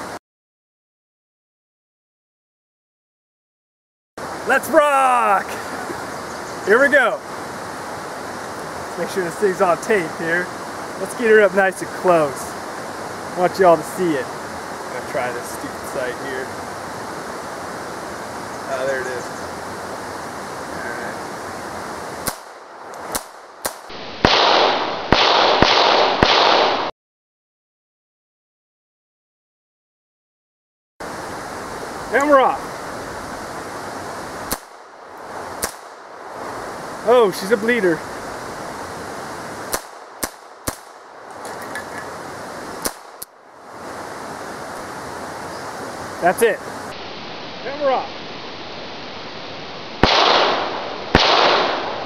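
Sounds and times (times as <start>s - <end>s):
loud rushing hiss: 4.2s - 24.8s, 31.0s - 52.0s
pistol firing sharp cracks: 22.2s - 26.9s, 39.7s - 41.0s, 42.8s - 43.2s, 50.0s - 52.0s.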